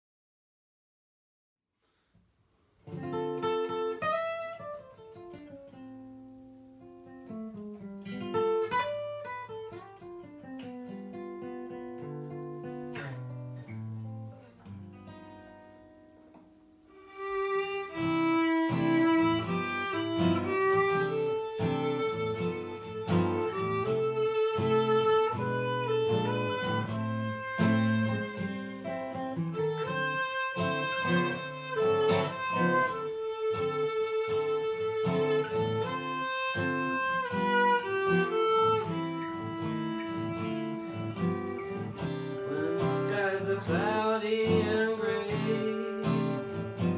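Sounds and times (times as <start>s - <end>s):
acoustic guitar strumming: 2.8s - 46.9s
bowed string melody: 16.9s - 46.9s.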